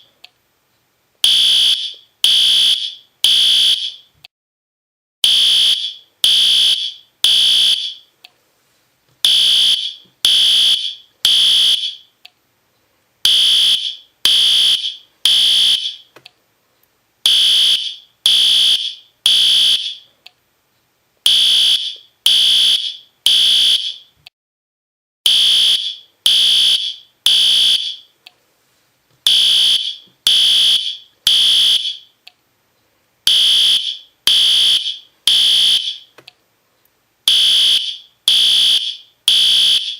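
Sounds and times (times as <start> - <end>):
fire alarm horn blasts: 1.2 - 4.1, 5.2 - 8.0, 9.2 - 12.1, 13.3 - 16.1, 17.3 - 20.0, 21.3 - 24.1, 25.3 - 28.1, 29.3 - 32.1, 33.3 - 36.1, 37.3 - 39.9.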